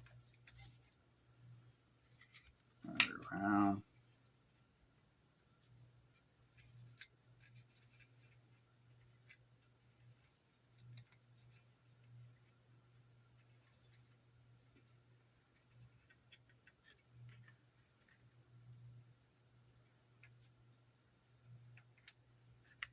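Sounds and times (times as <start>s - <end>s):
plastic parts clicking and scratching: 0.0s - 1.0s, 15.5s - 18.4s, 21.7s - 22.9s
low steady hum: 0.0s - 22.9s.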